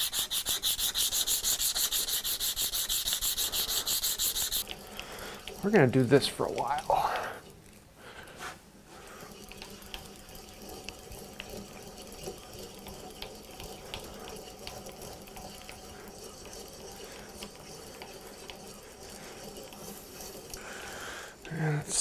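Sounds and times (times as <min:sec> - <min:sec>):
sandpaper rubbing by hand: 0:00.0 - 0:04.6.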